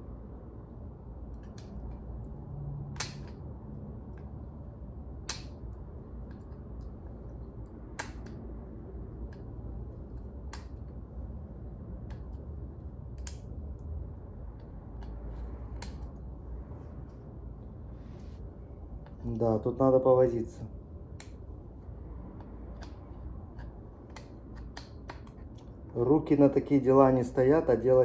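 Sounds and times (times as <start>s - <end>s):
steady low rumble: 0.0s - 28.0s
hand tools clicking on brake parts: 3.0s - 3.4s, 5.3s - 7.0s, 7.9s - 8.5s, 22.4s - 25.7s.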